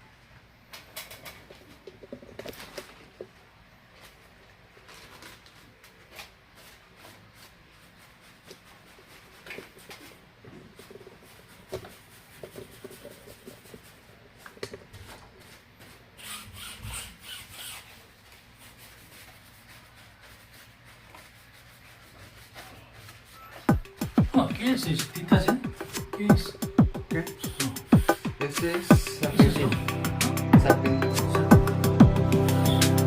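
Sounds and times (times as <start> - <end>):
hand scrubbing and wiping: 6.5 - 14.4, 15.3 - 30.4.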